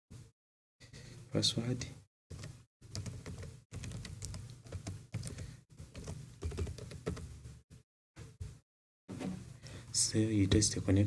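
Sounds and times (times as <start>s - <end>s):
computer keyboard typing: 2.3s - 7.3s.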